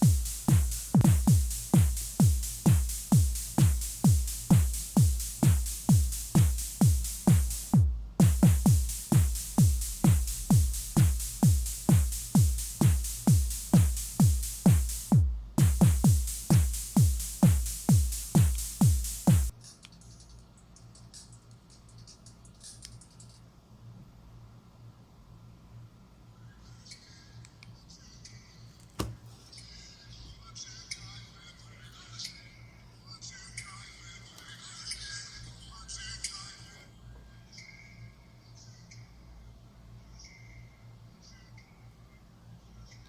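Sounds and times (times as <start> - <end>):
bass-heavy electronic dance music: 0.0 - 19.5.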